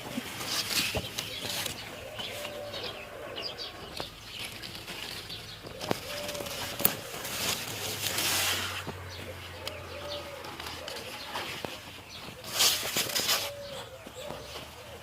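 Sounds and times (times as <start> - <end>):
rustling noise: 0.0 - 15.0
bird low arched call: 1.3 - 4.0, 9.2 - 11.5, 12.4 - 15.0.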